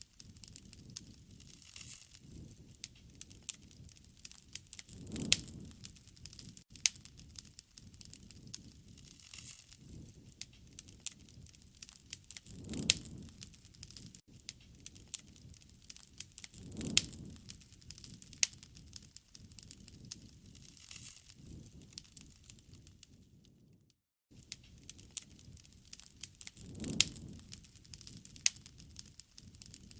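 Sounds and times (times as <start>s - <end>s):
puffs of flame: 0.0s - 29.9s
wood fire crackling and popping: 0.0s - 29.9s.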